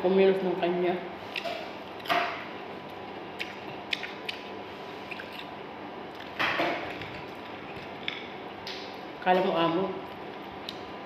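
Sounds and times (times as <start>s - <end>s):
faint steady hum: 0.0s - 11.0s
food crunching: 2.8s - 9.0s.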